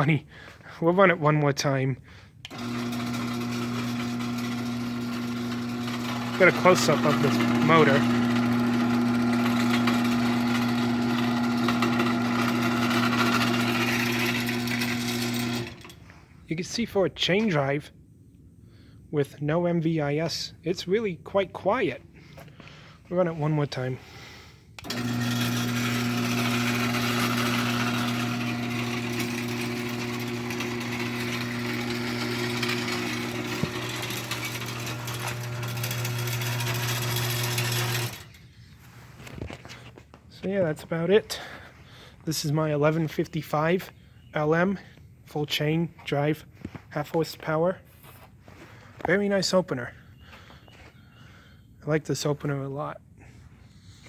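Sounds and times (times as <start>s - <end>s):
garage door opener motor humming: 2.5s - 16.0s, 24.8s - 38.4s
chain drive rattling: 24.8s - 38.4s.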